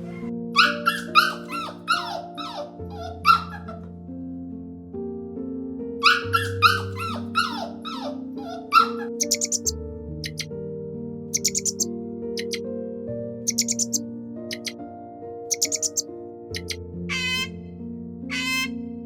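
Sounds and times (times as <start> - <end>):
dog yapping: 0.0 - 3.9, 6.0 - 9.7
background music: 0.0 - 4.9, 5.9 - 10.6, 11.4 - 12.6, 13.4 - 14.8, 15.5 - 19.0.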